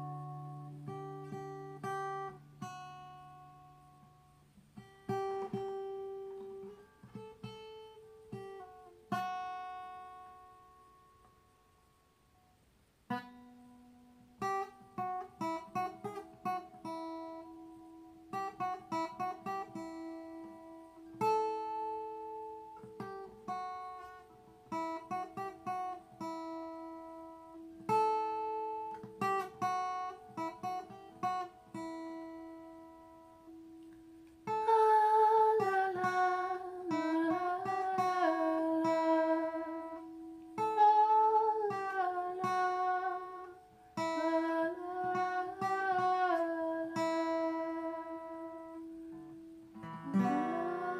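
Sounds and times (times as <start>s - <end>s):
acoustic guitar picked slowly: 0.0s - 50.9s.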